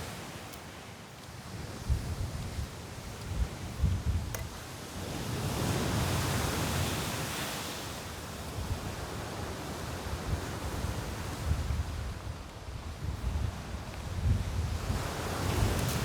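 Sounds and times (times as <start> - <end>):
wind gusting against microphone: 1.4 - 7.4, 8.6 - 16.0
sea surf washing onto beach: 4.5 - 12.4, 13.4 - 16.0.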